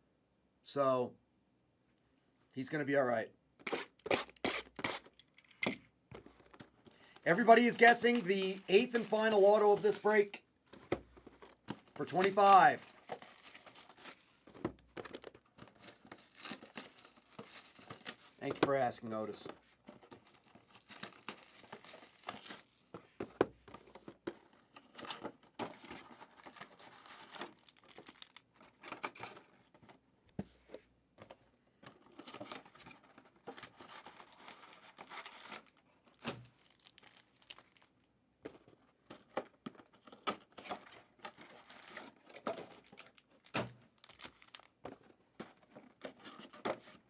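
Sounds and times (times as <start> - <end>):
card wrappers tearing and crinkling: 3.6 - 5.2, 7.0 - 10.4, 11.7 - 18.4, 20.0 - 22.8, 25.8 - 28.7, 33.6 - 37.9, 41.3 - 44.8
cards rustling and clicking: 6.2 - 30.0, 38.5 - 47.0.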